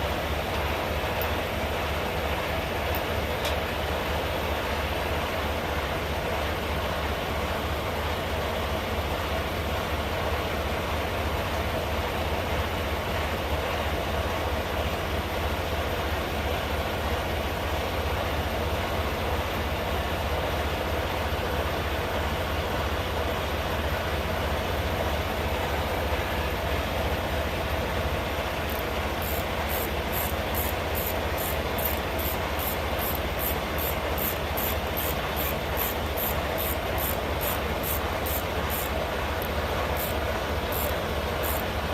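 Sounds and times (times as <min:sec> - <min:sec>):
truck engine idling: 0:00.0 - 0:41.9
faint high ticking: 0:28.7 - 0:41.7.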